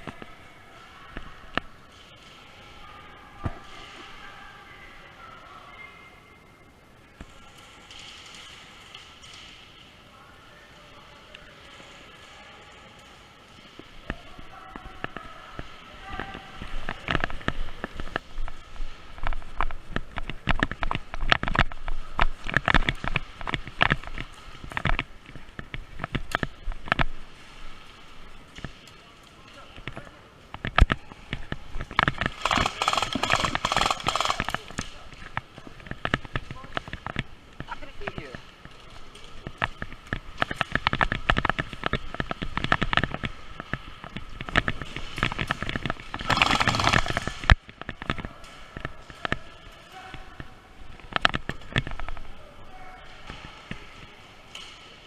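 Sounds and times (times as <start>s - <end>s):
sharp clicks and knocks: 29.8s - 38.8s
sharp crack: 31.8s - 35.4s, 44.9s - 48.6s.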